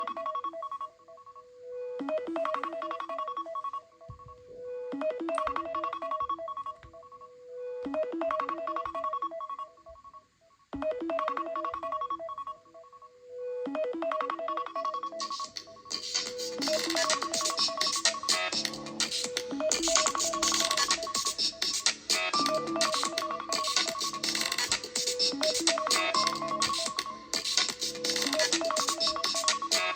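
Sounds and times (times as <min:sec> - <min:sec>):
brighter busier ringtone: 0:02.0 - 0:07.4, 0:13.6 - 0:29.9
smartphone ringtone melody: 0:02.1 - 0:07.0, 0:13.6 - 0:29.9.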